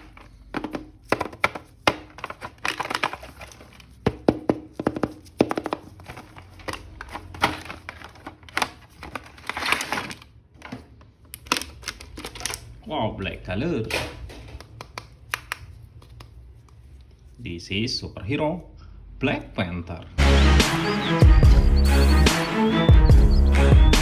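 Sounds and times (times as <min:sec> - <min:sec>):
plastic packaging crinkling: 0:00.0 - 0:12.8
plastic figure pieces clicking: 0:14.4 - 0:16.3.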